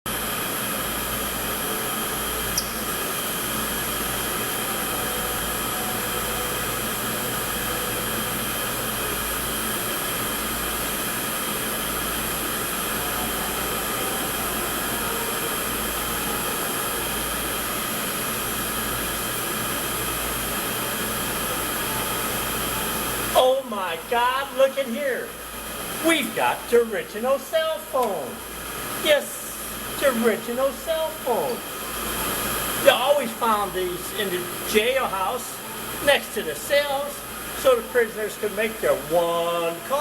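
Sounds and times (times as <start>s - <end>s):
mechanical whir with hum: 0.1s - 40.0s
short high chirp: 2.6s - 3.0s.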